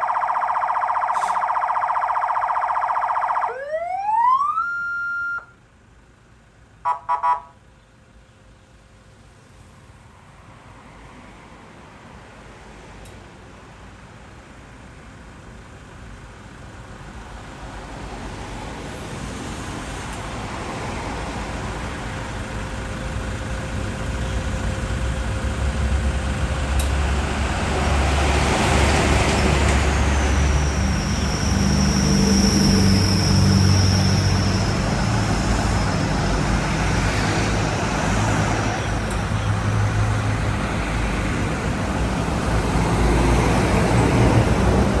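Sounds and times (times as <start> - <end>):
high whine: 29.8 - 38.0.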